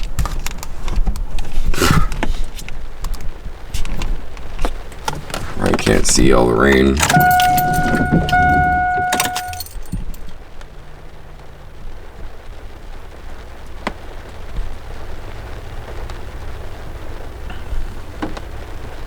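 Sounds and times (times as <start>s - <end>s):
faint rain: 0.0s - 7.1s, 9.6s - 19.0s
clicks: 4.6s - 10.2s
keys jangling: 4.9s - 10.3s
electronic warning tone: 5.1s - 10.0s.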